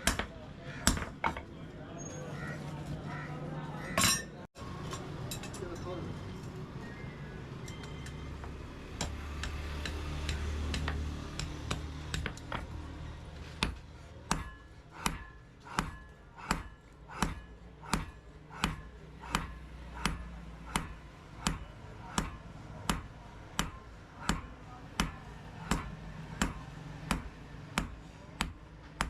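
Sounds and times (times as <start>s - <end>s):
hammer striking steel on anvil: 0.0s - 1.4s, 13.6s - 29.0s.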